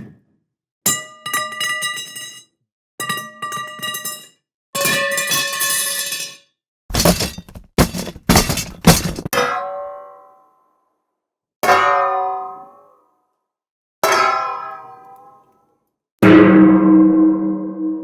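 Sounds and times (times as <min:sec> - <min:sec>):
loud sharp knocks: 0:06.9 - 0:09.3.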